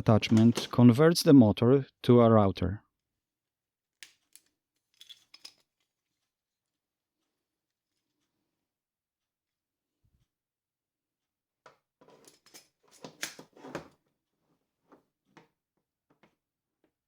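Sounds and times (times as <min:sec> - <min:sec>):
plastic tool parts clicking: 0:00.2 - 0:00.8.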